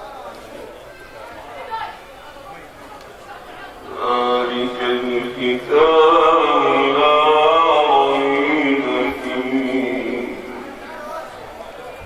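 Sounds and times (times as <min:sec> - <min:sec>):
man chanting: 0:03.9 - 0:11.1.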